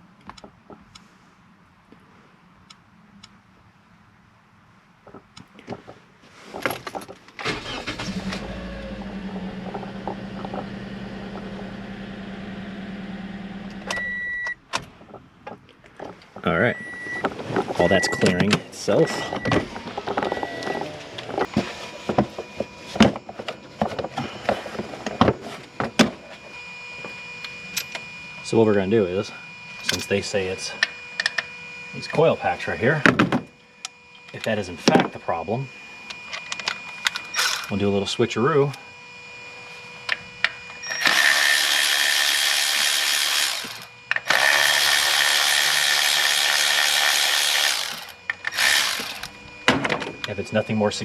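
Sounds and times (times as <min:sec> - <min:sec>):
cordless power tool whining: 0:07.4 - 0:14.3, 0:18.1 - 0:50.3.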